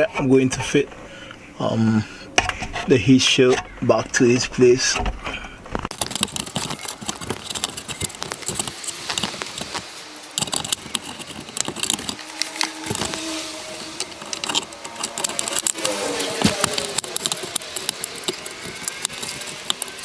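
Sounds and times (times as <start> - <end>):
metal heat shield rattling: 5.9 - 20.0.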